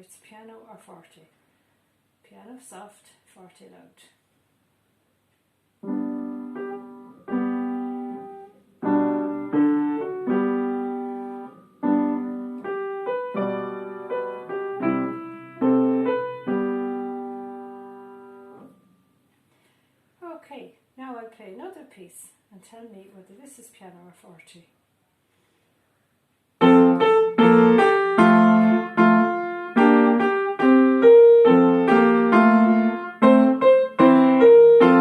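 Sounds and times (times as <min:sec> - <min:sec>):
soft piano piece: 0:05.8 - 0:18.9, 0:26.6 - 0:35.0.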